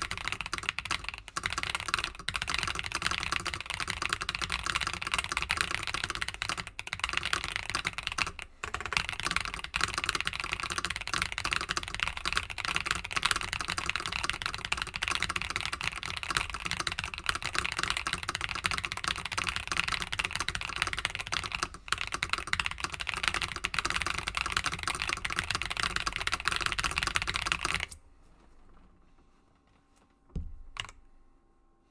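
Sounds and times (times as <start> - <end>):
fast mechanical keyboard typing: 0.0 - 28.0, 30.7 - 31.0
low thump: 30.3 - 30.7.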